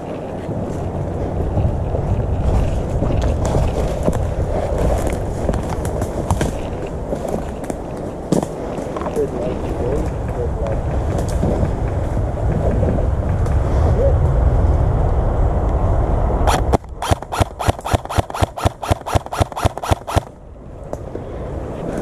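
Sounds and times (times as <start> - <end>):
low rumble on microphone: 0.0 - 17.0
airsoft gun firing rapid shots: 16.5 - 20.3.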